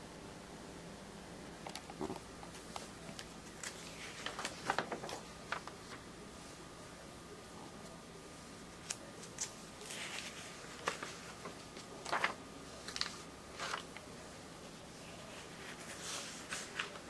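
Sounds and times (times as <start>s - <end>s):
paper pages rustling and turning: 1.6s - 6.0s, 8.8s - 14.2s, 15.0s - 17.0s.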